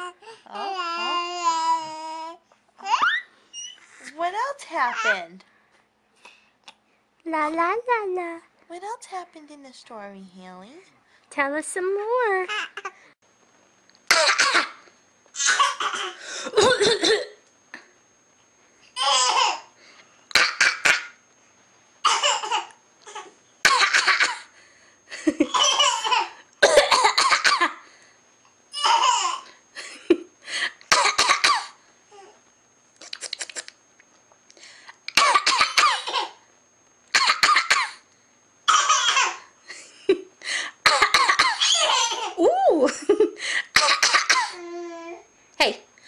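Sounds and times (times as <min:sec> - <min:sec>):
baby laughing: 0:02.8 - 0:03.7, 0:19.0 - 0:19.7, 0:25.4 - 0:26.4, 0:28.8 - 0:29.5, 0:41.4 - 0:42.4
playful fake coughs: 0:14.1 - 0:14.8, 0:15.4 - 0:17.4, 0:20.3 - 0:21.2, 0:23.6 - 0:24.5, 0:25.5 - 0:27.8, 0:30.9 - 0:31.8, 0:35.1 - 0:36.4, 0:37.1 - 0:38.0, 0:38.7 - 0:39.4, 0:40.8 - 0:42.3, 0:43.7 - 0:44.6.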